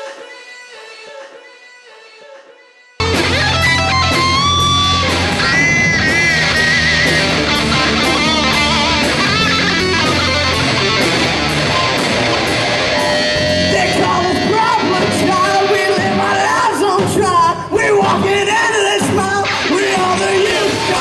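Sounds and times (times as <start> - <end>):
electric guitar lead: 3.0 - 16.8
bass: 3.0 - 17.4
steady drum beat: 3.0 - 21.0.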